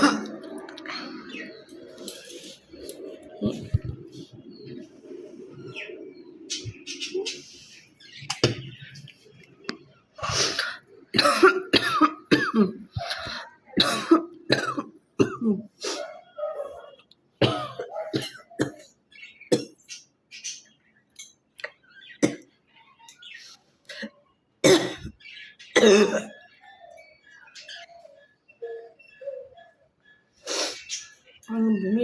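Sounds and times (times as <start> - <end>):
woman coughing: 10.6 - 15.7, 17.4 - 18.9, 25.8 - 26.3.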